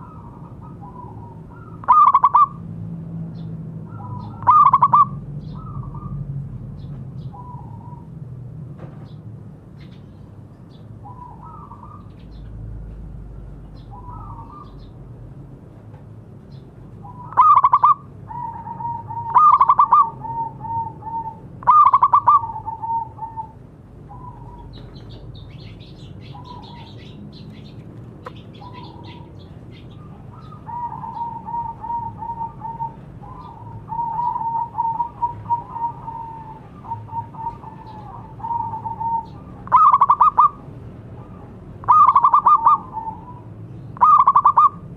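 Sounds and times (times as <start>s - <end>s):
doves cooing: 0.0s - 2.6s, 3.9s - 6.3s, 17.0s - 25.4s, 26.2s - 44.9s.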